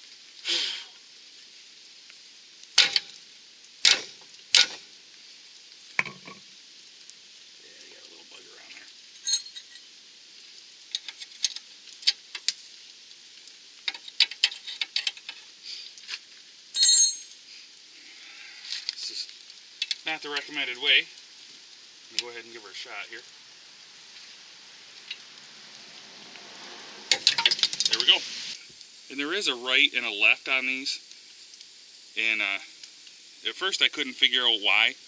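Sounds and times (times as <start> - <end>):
quiet hiss: 0.0 - 35.0
metallic clinks of hand tools: 9.2 - 9.7, 16.8 - 17.4.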